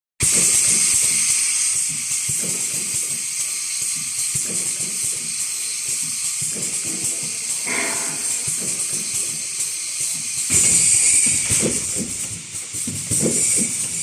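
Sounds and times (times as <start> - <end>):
machine hissing: 0.2 - 14.0.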